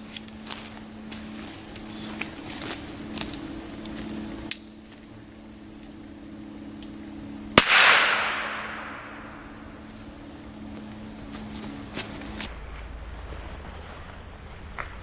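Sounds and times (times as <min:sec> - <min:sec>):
firecracker bang with echo: 0:07.6 - 0:09.3.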